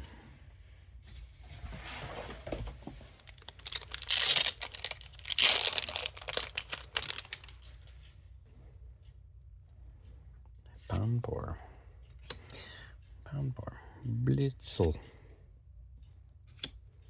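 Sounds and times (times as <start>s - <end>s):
foil wrapper crinkling and tearing: 3.2s - 7.8s.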